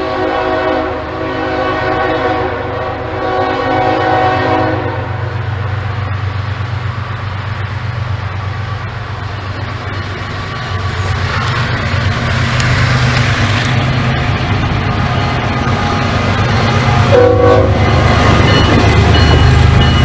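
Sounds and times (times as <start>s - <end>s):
train horn blasts: 0.0s - 5.5s, 17.1s - 20.0s
diesel locomotive rumble: 0.0s - 20.0s
rail noise: 0.0s - 20.0s.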